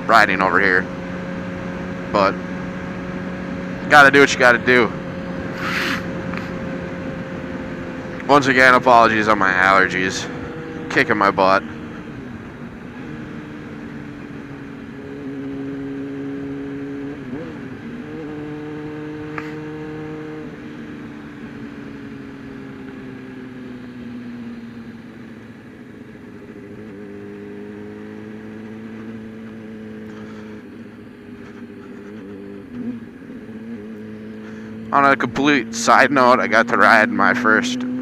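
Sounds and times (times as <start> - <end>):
motorcycle engine running: 0.0 - 38.0.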